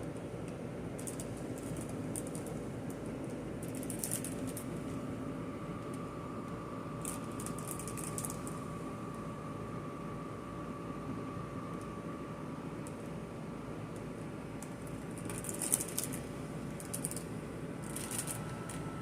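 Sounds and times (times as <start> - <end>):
steady hum: 0.0 - 19.0
packaging crinkling: 17.8 - 18.8.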